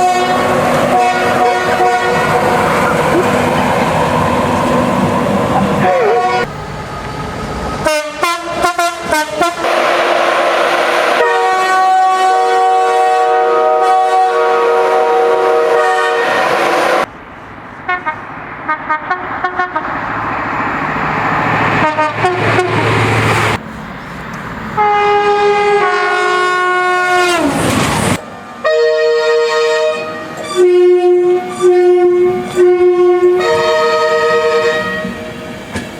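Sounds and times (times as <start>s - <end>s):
train horn blasts: 0.0s - 2.7s, 5.8s - 6.5s, 7.8s - 17.1s, 17.9s - 19.9s, 21.8s - 22.8s, 24.8s - 27.5s, 28.6s - 35.4s.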